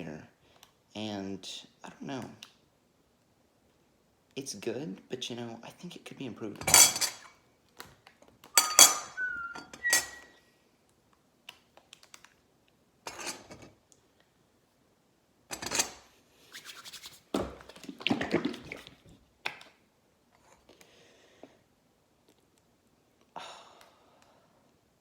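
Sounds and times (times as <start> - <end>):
utensil scraping and knocking dish: 6.6 - 7.3, 8.6 - 10.2, 13.1 - 13.7, 15.5 - 16.0.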